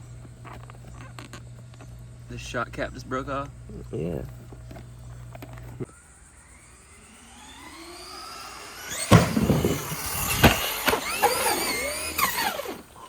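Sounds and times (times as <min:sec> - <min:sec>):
electric motor whining: 0:00.0 - 0:13.0
toy truck impact and knocks: 0:09.0 - 0:12.4.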